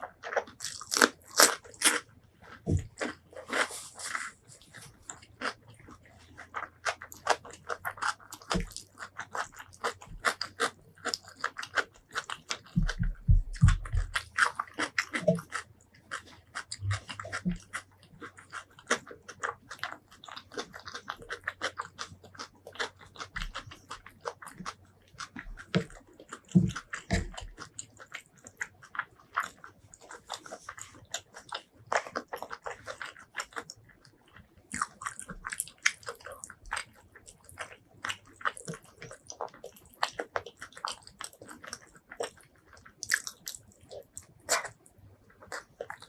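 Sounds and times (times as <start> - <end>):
chewing and crunching: 0.0 - 46.0.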